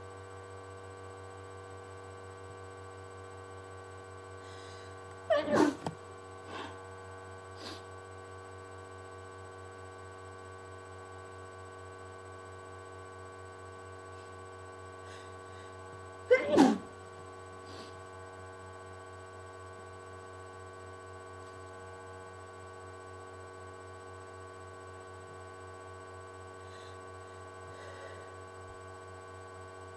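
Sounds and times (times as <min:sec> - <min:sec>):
steady background hum: 0:00.0 - 0:29.9
faint short sounds: 0:04.5 - 0:06.8
person sneezing: 0:04.5 - 0:06.8, 0:16.3 - 0:17.0, 0:27.8 - 0:28.3.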